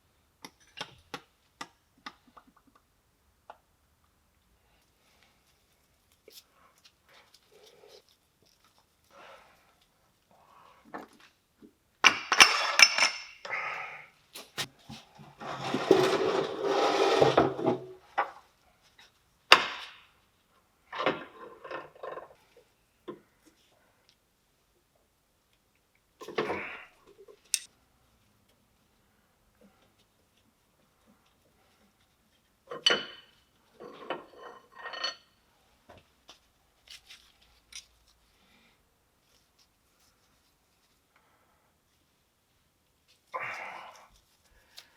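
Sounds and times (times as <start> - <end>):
metal parts scraping and grinding: 15.4 - 17.8
metal tools clinking: 27.4 - 27.7.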